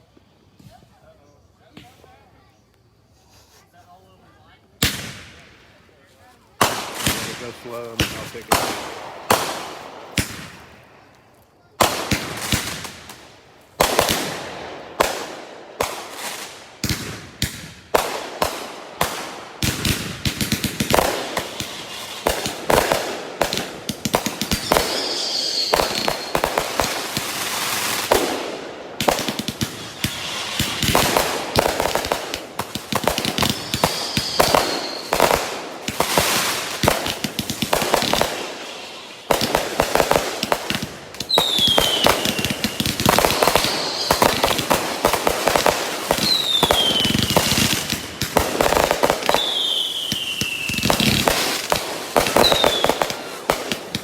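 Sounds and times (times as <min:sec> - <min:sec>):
fireworks crackle: 0:00.0 - 0:54.0
fireworks barrage: 0:04.8 - 0:54.0
falling firework whistles: 0:15.0 - 0:54.0.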